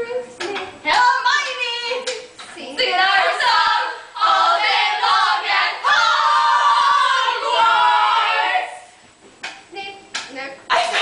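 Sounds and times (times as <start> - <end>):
young voices singing together: 2.7 - 9.0.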